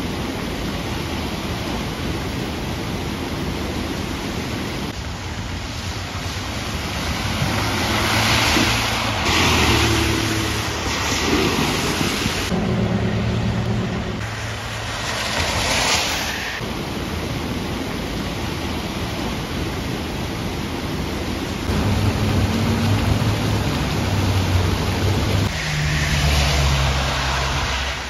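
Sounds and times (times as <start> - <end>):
tyres swishing through water: 0.0 - 17.0, 17.6 - 28.0
heavy rain falling: 0.0 - 28.0
car engines humming: 4.9 - 11.1, 12.5 - 16.6, 20.9 - 28.0.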